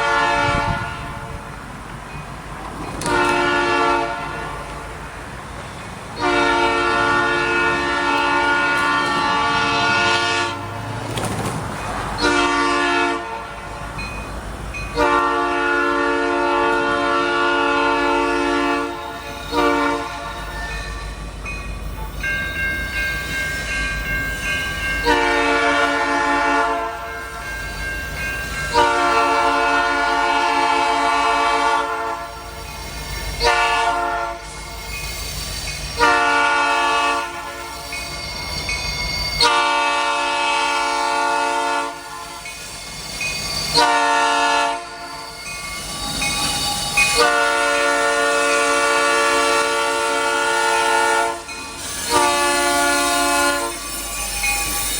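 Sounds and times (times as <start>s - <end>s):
diesel locomotive horn blasts: 0.0s - 1.6s, 3.0s - 5.0s, 6.1s - 11.0s, 12.1s - 13.9s, 14.9s - 21.2s, 25.0s - 27.5s, 28.5s - 32.6s, 33.4s - 34.8s, 36.0s - 37.9s, 39.3s - 42.6s, 43.6s - 45.3s, 46.5s - 54.2s
low rumble of passing train: 0.0s - 54.9s
high-pitched train screech: 5.6s - 11.0s, 14.7s - 54.9s.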